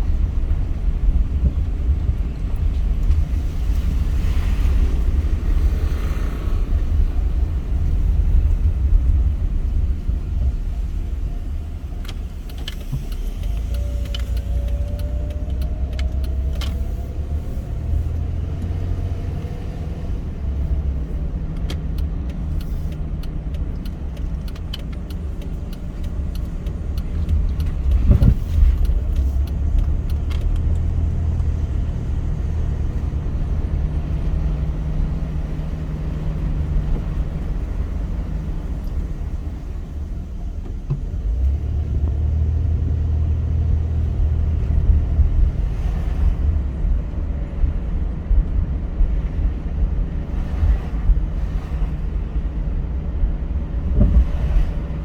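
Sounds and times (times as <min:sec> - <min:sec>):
car road and engine rumble: 0:00.0 - 0:55.0
car bumps: 0:27.3 - 0:30.6, 0:53.9 - 0:54.9.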